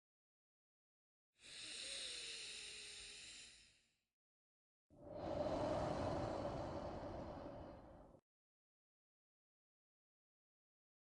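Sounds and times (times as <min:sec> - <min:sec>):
person breathing deeply: 0:01.4 - 0:03.4, 0:05.0 - 0:08.2.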